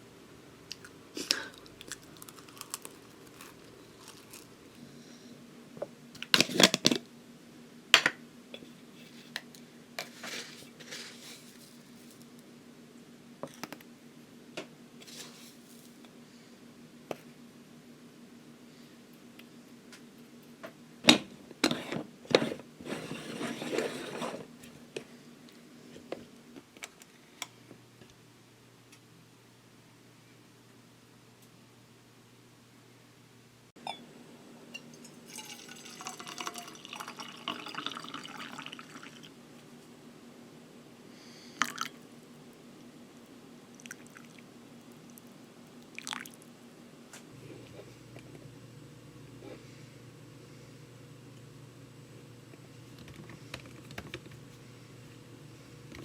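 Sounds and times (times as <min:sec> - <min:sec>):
rustling: 0:10.1 - 0:12.4.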